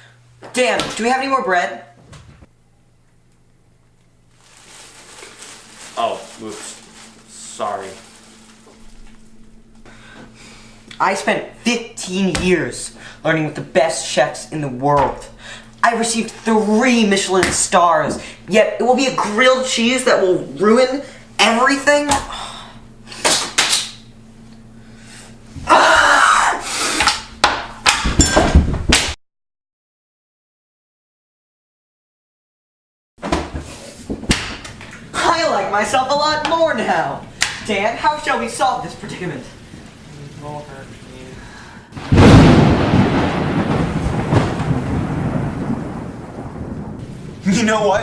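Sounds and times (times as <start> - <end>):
thunder crack and rumble: 42.0 - 48.0.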